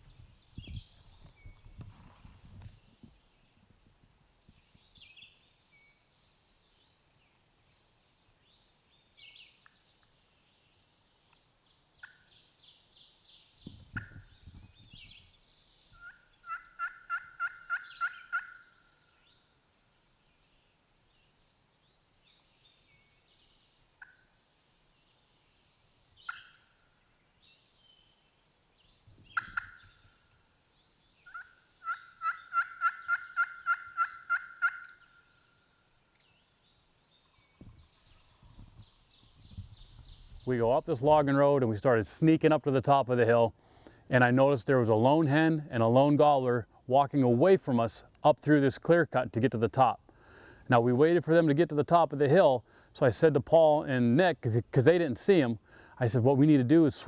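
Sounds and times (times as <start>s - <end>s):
turkey yelping: 16.0s - 18.7s, 31.3s - 35.0s.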